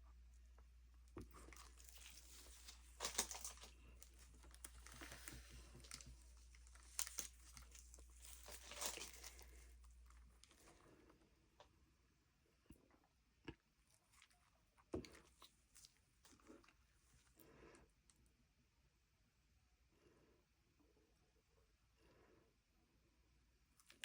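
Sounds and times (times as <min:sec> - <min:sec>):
crinkling and rustling handling: 0:00.0 - 0:11.8, 0:12.7 - 0:18.3, 0:23.7 - 0:24.0
low steady hum: 0:00.0 - 0:24.0.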